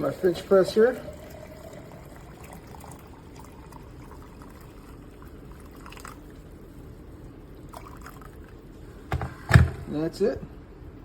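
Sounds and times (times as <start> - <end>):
water pouring from kettle: 0.0 - 6.5, 7.6 - 8.6.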